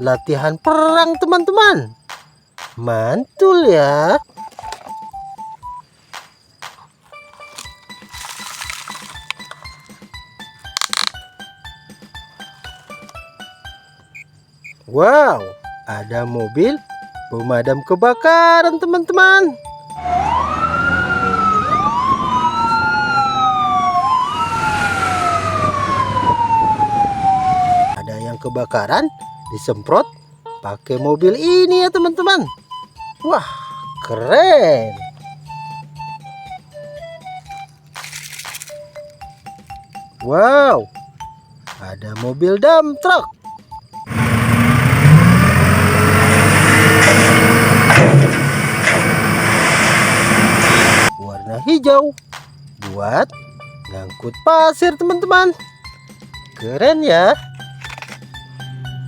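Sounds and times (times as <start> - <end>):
fire engine siren wailing: 19.8 - 28.2, 44.1 - 52.0
truck engine running: 43.4 - 51.1.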